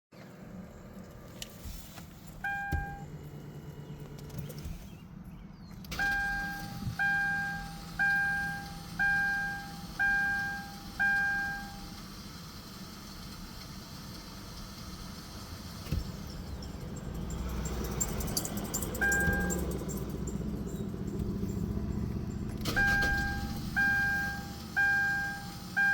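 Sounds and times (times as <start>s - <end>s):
car low hum: 0.1s - 25.9s
car warning chime: 2.4s - 3.2s, 5.9s - 12.0s, 16.4s - 25.9s.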